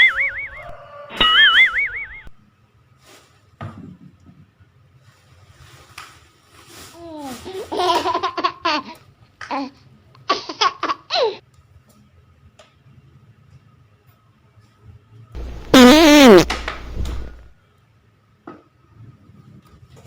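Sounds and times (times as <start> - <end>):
laughter: 7.7 - 9.0.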